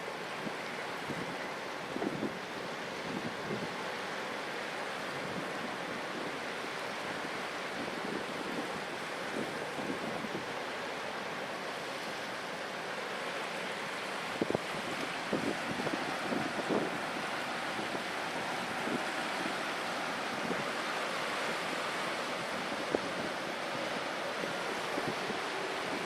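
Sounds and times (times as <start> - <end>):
wind on microphone: 2.0 - 2.4, 7.8 - 10.5, 14.4 - 20.8.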